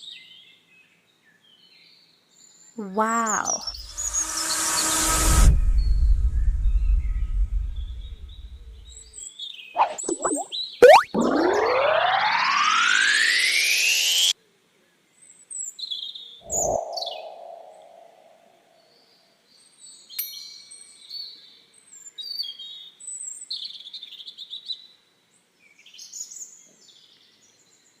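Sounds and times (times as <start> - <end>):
rising sweep sound effect: 3.7 - 8.9, 9.8 - 14.3, 16.5 - 18.3
falling boing sound: 9.8 - 14.3
birds chirping: 16.5 - 18.3.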